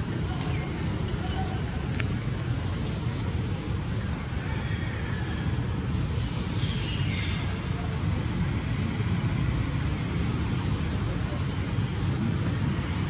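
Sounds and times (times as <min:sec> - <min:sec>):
low rumbling background noise: 0:00.0 - 0:13.0.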